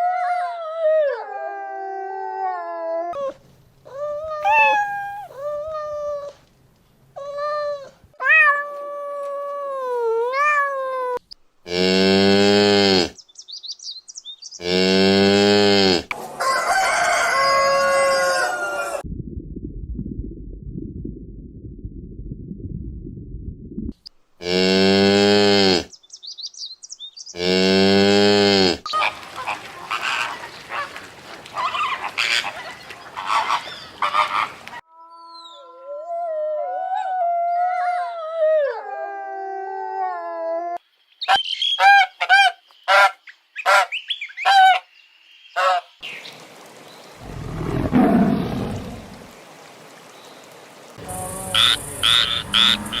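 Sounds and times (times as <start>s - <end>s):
gliding animal calls: 4.4s - 5.5s, 47.2s - 49.4s, 51.0s - 53.0s
cow mooing: 51.0s - 53.0s
short honking calls: 51.0s - 53.0s.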